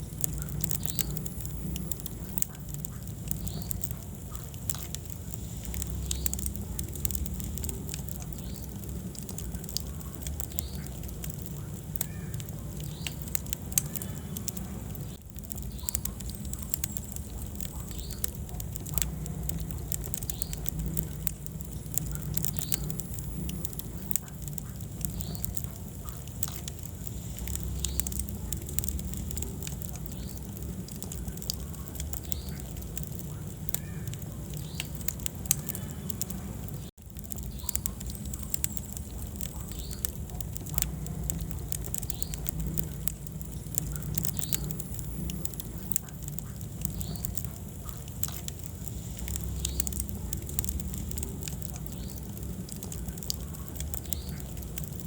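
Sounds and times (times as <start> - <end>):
low rumble of flames: 0.0 - 55.0
wood fire crackling and popping: 0.0 - 55.0.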